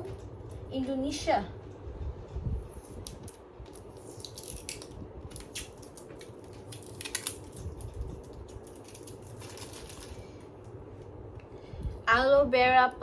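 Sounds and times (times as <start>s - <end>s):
packaging clicks and rustles: 2.8s - 10.6s.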